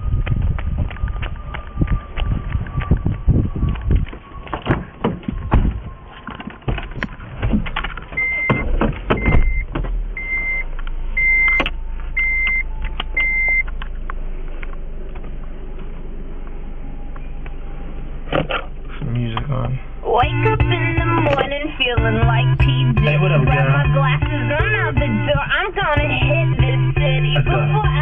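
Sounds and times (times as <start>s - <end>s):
car engine humming: 0.0s - 28.0s
thumps of person entering car: 4.5s - 10.0s
car warning chime beeping: 8.1s - 13.8s, 20.0s - 28.0s.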